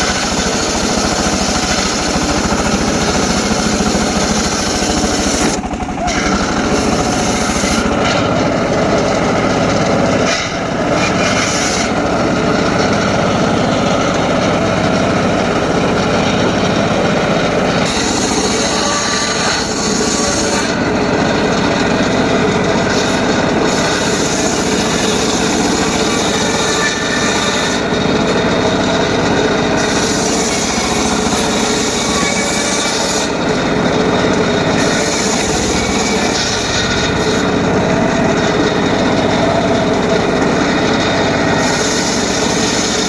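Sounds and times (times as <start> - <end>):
circular saw cutting wood: 0.0 - 43.0
pulsing motor drone: 0.0 - 43.0.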